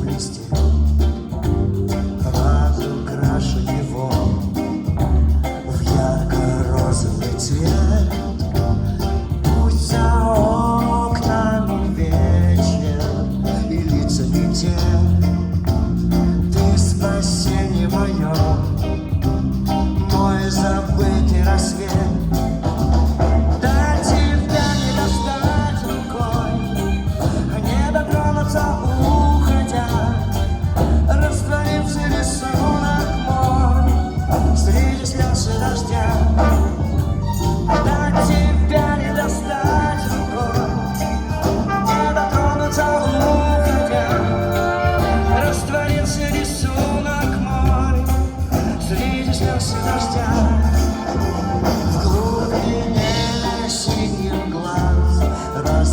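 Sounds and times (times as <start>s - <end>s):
bass: 0.0s - 55.9s
guitar: 0.0s - 55.9s
live band playing pop: 0.0s - 55.9s
person singing: 1.9s - 55.9s
drum beat: 18.3s - 55.9s.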